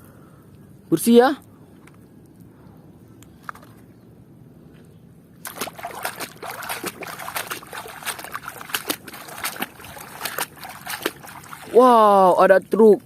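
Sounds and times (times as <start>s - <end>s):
water splashing in basin: 5.4s - 12.2s.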